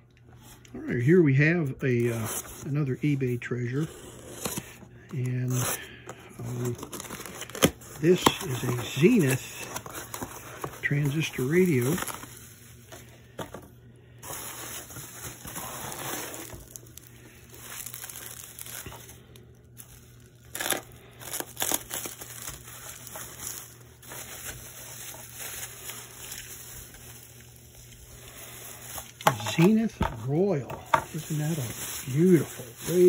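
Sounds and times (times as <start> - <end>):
radio handling rustling: 29.0 - 31.4.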